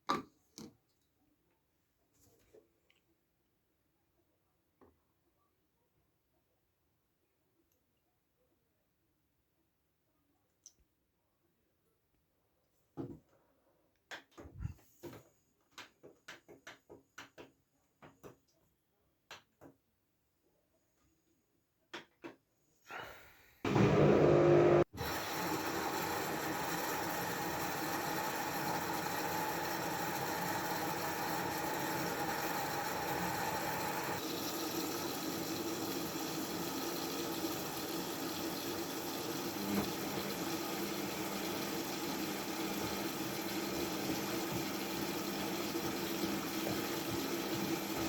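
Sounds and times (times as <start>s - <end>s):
washing machine whirring: 23.7s - 48.0s.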